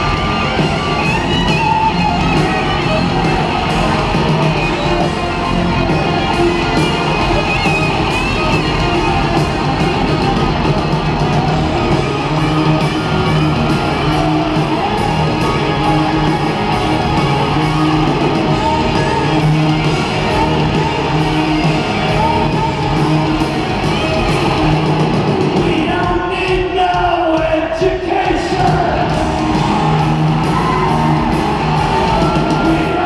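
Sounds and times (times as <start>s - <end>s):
live hard rock band: 0.0s - 33.0s
person singing and shouting: 25.5s - 29.3s.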